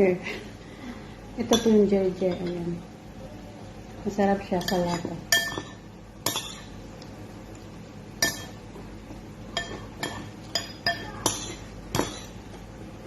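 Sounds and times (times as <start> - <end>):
utensils clinking on dishware: 1.4 - 2.6, 4.5 - 6.8, 8.2 - 8.6, 9.5 - 12.5.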